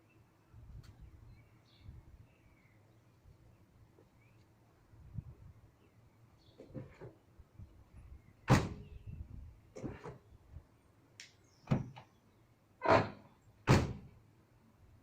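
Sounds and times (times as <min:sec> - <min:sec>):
sharp knocks and clunks: 0:08.5 - 0:08.8, 0:11.7 - 0:12.1, 0:12.8 - 0:14.1.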